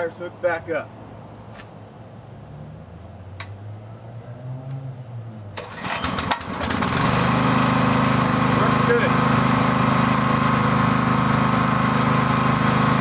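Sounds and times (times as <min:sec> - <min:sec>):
small engine running: 0:05.6 - 0:13.0.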